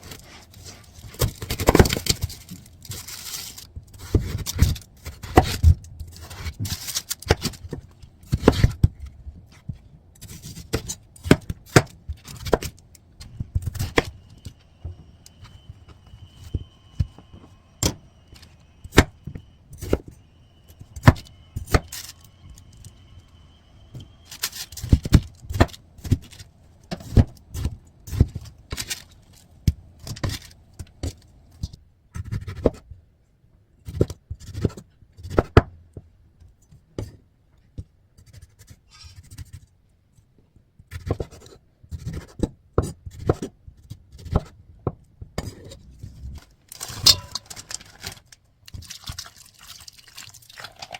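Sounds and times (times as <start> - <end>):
faint high whine: 12.3 - 26.8, 45.8 - 47.8
dishes and utensils clinking: 46.8 - 47.8.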